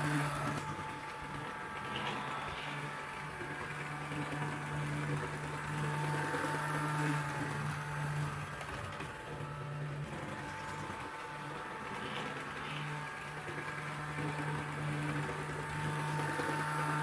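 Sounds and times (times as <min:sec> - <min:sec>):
model railcar motor humming: 0:00.0 - 0:17.0.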